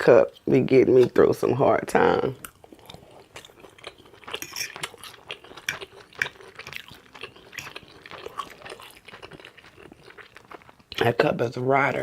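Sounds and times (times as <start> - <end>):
open-mouth chewing: 2.4 - 11.0.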